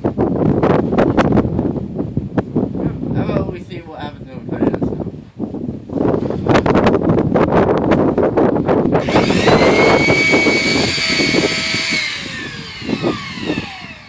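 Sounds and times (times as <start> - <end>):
electric belt sander: 9.0 - 14.0.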